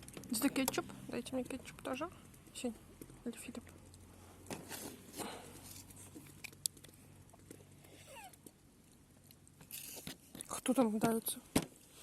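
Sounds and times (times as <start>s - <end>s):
kitten retching: 7.9s - 8.4s.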